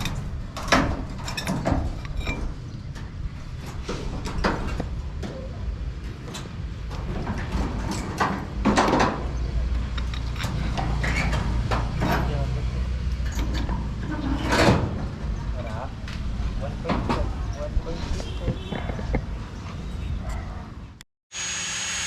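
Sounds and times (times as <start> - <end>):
knocks and clatter: 0.0 - 12.6.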